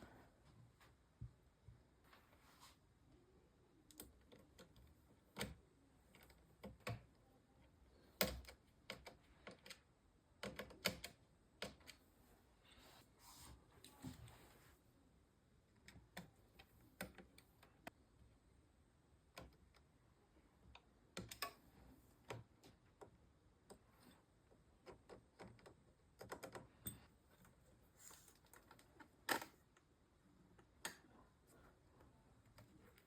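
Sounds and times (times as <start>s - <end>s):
computer parts clicking and tapping: 8.2s - 12.0s, 20.7s - 21.6s, 24.8s - 27.1s.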